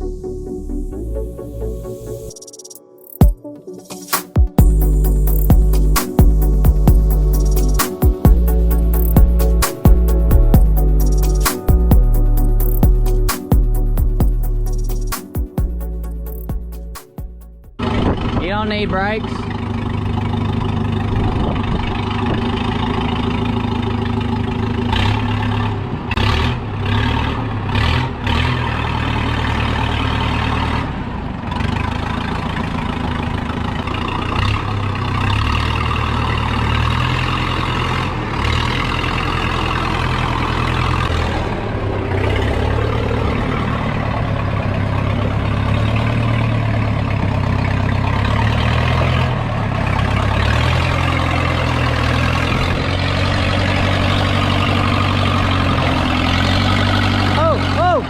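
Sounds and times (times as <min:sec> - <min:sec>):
backhoe engine running: 0:04.6 - 0:58.0.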